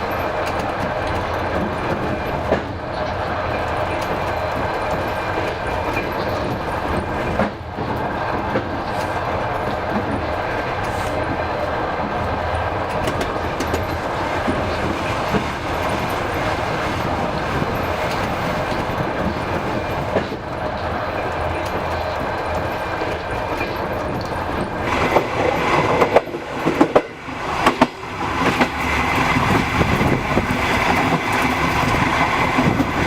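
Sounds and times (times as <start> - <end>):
train wheels rumbling on track: 0.0 - 33.0.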